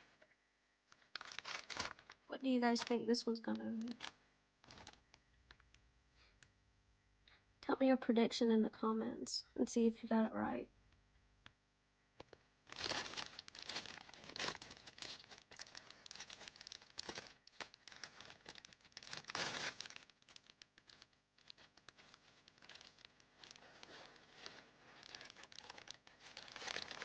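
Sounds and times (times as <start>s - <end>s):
plastic packaging crackling: 0.9s - 5.8s, 12.2s - 27.0s.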